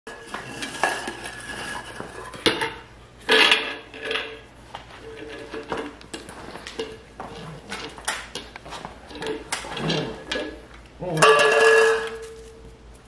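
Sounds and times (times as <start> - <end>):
food bowls clattering on floor: 0.1 - 12.7.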